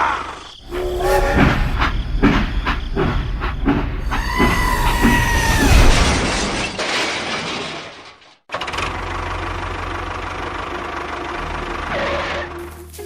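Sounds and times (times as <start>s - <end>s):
engine running with knocking pulse: 8.5s - 13.0s.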